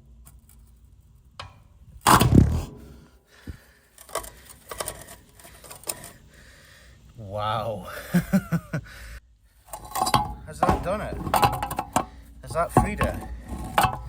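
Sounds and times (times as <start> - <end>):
heavy metal bang with thud: 2.0 - 3.2
light metallic clicks and knocks: 9.7 - 14.0.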